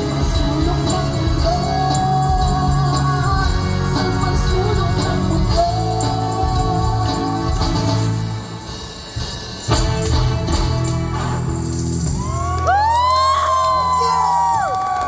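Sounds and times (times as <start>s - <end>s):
bass line: 0.0s - 8.5s
held melody line: 0.0s - 8.8s
band music with steady beat: 0.0s - 15.0s.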